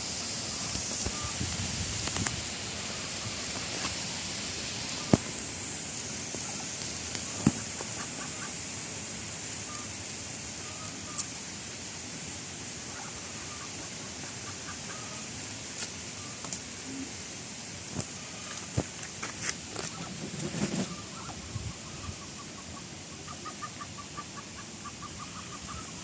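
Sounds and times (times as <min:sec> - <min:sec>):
outdoor hiss: 0:00.0 - 0:26.0
chickens clucking: 0:00.1 - 0:09.0, 0:09.7 - 0:11.4, 0:12.6 - 0:15.4.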